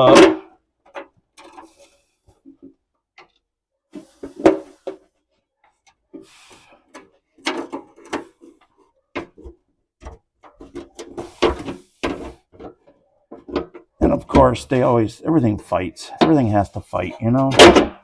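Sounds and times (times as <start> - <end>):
metal clanks and knocks: 6.9 - 15.0, 16.1 - 18.0.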